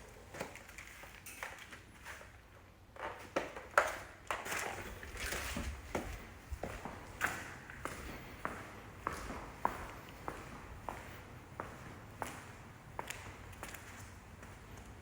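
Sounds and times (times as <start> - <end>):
faint room noise: 0.0 - 15.0
footsteps: 4.5 - 15.0.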